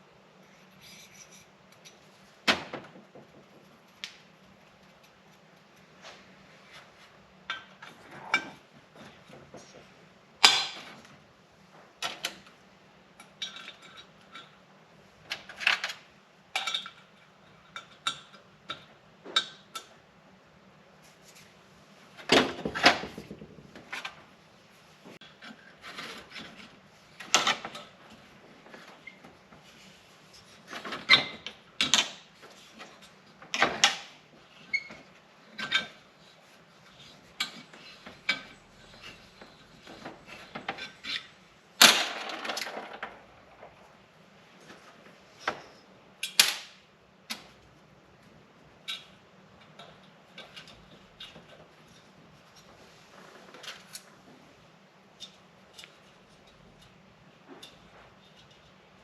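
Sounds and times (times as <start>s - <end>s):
tools and metal parts clinking: 13.2s - 14.6s, 15.3s - 19.9s, 30.4s - 43.8s, 48.8s - 52.7s.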